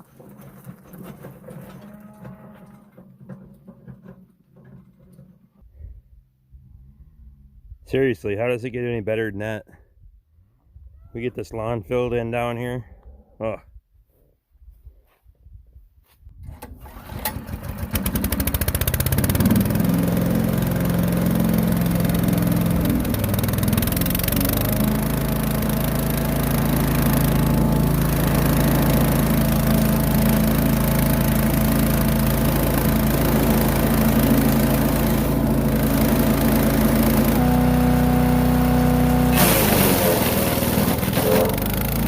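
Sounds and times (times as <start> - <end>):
wood chipper engine running: 16.5 - 42.0.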